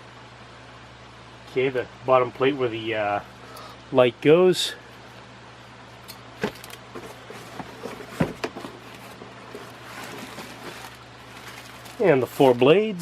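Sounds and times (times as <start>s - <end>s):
packaging rustling: 6.4s - 13.0s.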